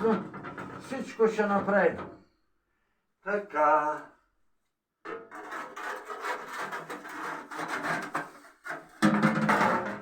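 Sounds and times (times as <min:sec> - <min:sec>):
hard parts scraping and rubbing: 0:05.3 - 0:08.9.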